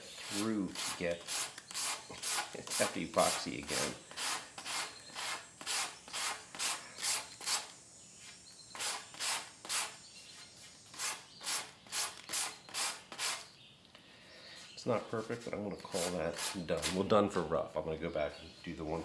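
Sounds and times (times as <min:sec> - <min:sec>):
sandpaper sanding strokes: 0:00.0 - 0:13.5, 0:15.9 - 0:17.1.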